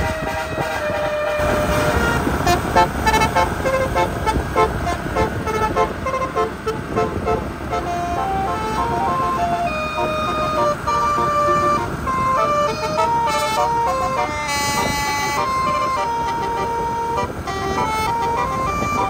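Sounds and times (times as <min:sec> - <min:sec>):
low engine rumble: 0:00.0 - 0:19.0
musical air horn melody: 0:00.0 - 0:19.0.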